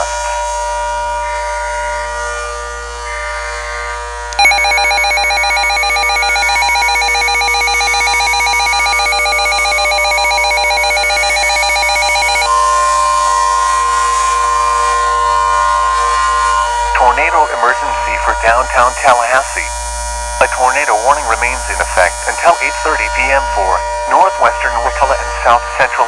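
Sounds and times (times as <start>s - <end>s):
single steady tone: 4.4s - 12.5s
rapidly pulsing ringing tone: 4.4s - 12.8s.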